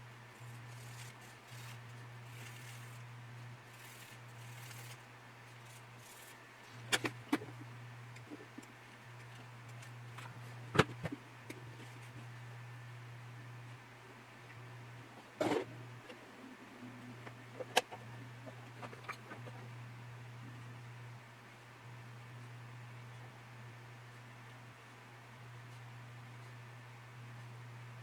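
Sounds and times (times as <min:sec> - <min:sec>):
steady low hum: 0:00.0 - 0:28.0
faint rustling of plastic parts: 0:00.4 - 0:12.3, 0:17.1 - 0:19.7.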